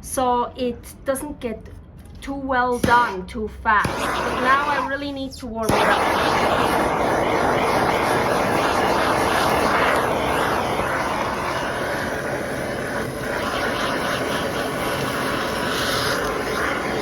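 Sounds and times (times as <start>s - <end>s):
gas torch flame blowing: 3.8s - 17.0s.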